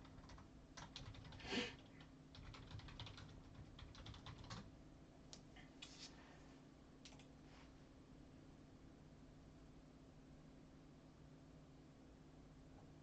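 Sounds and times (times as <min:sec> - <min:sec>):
faint keyboard typing: 0:00.0 - 0:04.7, 0:07.0 - 0:07.4.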